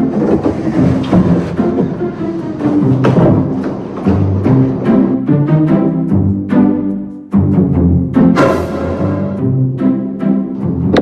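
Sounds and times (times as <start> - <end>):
background music with percussive hits: 7.4 - 9.7.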